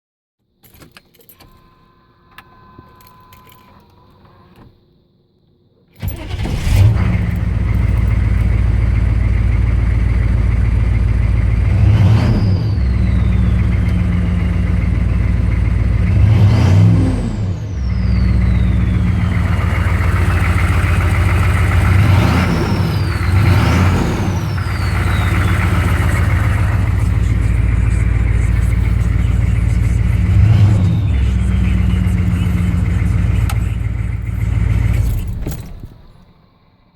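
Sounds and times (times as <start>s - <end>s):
diesel engine starting and idling: 6.0s - 36.7s
engine revving: 6.1s - 36.1s
turbocharger whistle: 11.7s - 33.8s.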